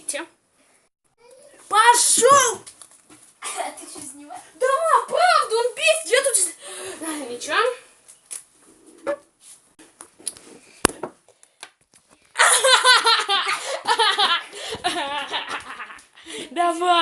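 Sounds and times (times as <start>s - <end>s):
child laughing: 12.4s - 16.0s.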